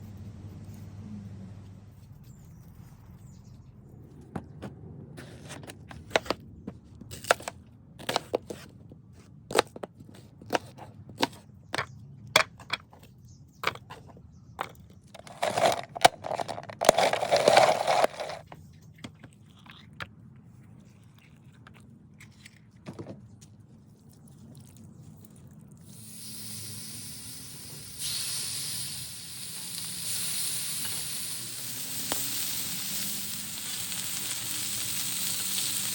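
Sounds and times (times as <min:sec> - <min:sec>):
food sizzling on a griddle: 0:25.9 - 0:35.9.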